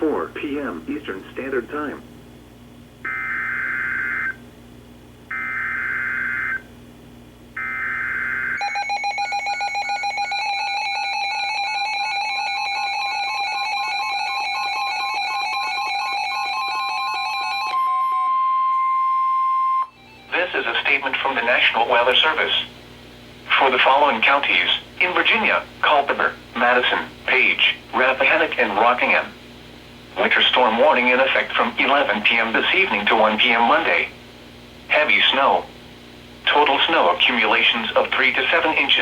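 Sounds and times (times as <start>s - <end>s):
steady warning tone: 3.0s - 4.5s, 5.3s - 6.7s, 7.5s - 22.6s
alert radios pulsing beeping: 3.1s - 4.4s, 5.3s - 6.6s.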